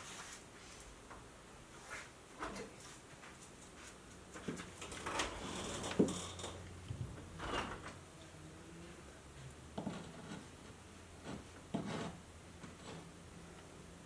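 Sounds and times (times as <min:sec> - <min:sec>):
low steady hum: 0:04.8 - 0:14.0
tool scrapes and knocks: 0:09.7 - 0:13.2.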